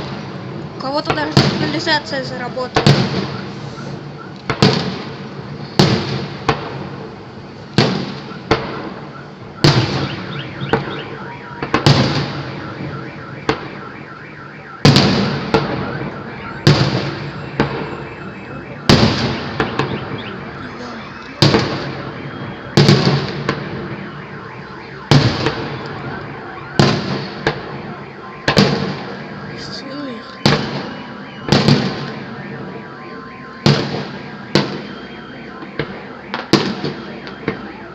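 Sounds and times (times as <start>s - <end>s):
car alarm: 0.0s - 7.1s, 7.7s - 37.9s
fireworks bangs echoing: 0.0s - 37.9s
small firework pops: 2.8s - 5.1s, 7.8s - 8.9s.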